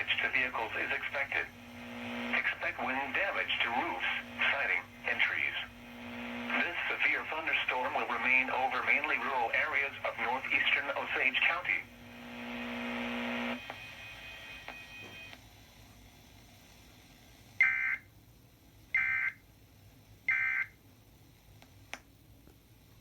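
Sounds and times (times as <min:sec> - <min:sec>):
buzzing tone: 0:01.4 - 0:09.1, 0:11.8 - 0:15.4.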